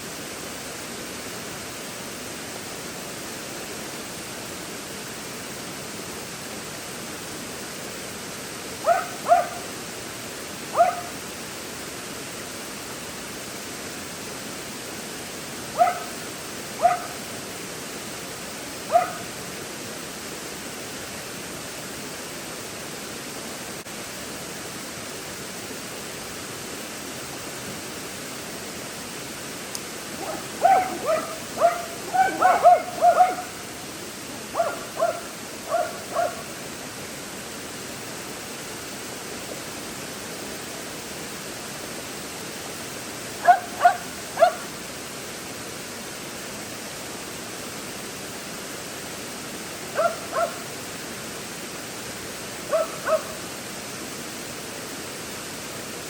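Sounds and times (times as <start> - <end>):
waterfall rushing: 0.0 - 56.0
dog barking: 8.8 - 9.7, 10.8 - 11.1, 15.8 - 16.2, 16.8 - 17.2, 18.9 - 19.3, 30.2 - 33.6, 34.6 - 36.5, 43.4 - 44.7, 50.0 - 50.6, 52.7 - 53.4.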